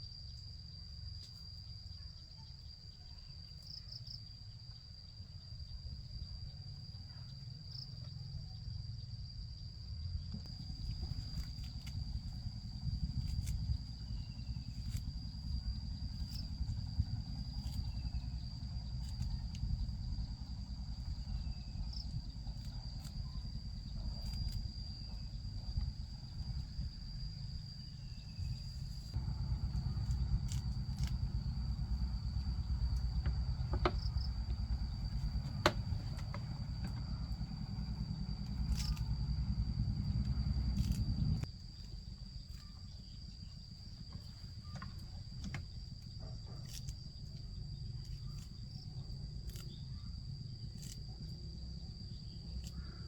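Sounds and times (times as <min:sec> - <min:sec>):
high-pitched insect drone: 0:05.1 - 0:41.5
wind rumble on microphone: 0:10.0 - 0:52.9.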